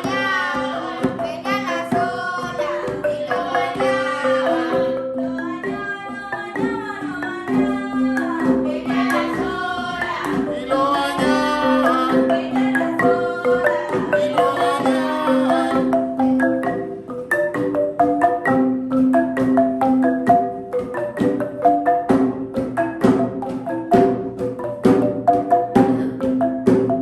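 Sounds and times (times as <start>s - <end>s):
voices singing: 0.0s - 16.8s
hand drum and bass drum percussion: 0.0s - 27.0s.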